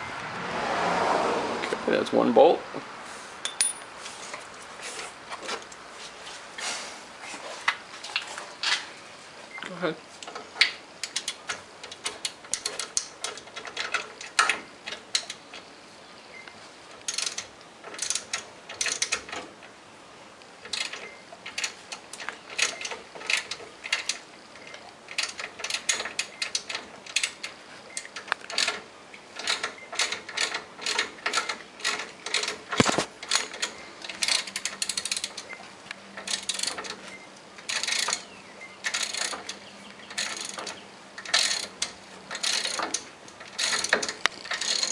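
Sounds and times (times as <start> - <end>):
ratchet clicking: 17.0 - 19.4, 29.4 - 35.4, 36.2 - 37.0, 37.6 - 44.9.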